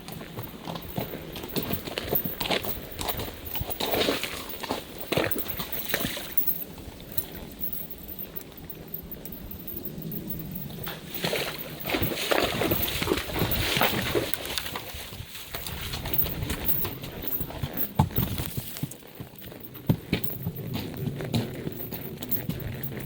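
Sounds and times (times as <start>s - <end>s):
hooves knocking: 0.0s - 14.3s, 15.6s - 23.0s
hooves splashing through water: 0.0s - 23.0s.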